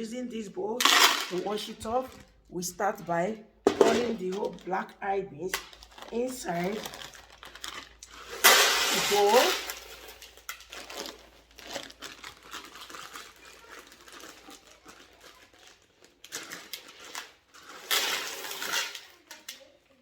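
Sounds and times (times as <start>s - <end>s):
dry beans pouring into a bowl: 0.8s - 2.2s, 5.5s - 19.6s.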